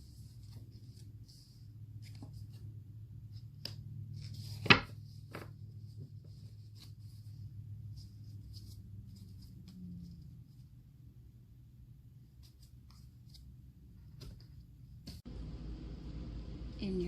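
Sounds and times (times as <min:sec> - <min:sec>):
steady low hum: 0:15.0 - 0:17.0.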